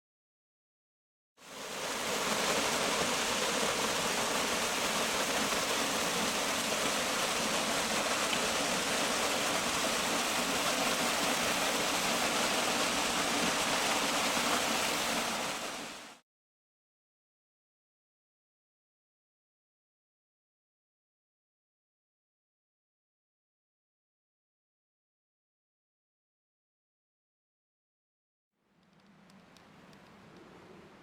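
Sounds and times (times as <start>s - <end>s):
waterfall rushing: 1.4s - 16.2s.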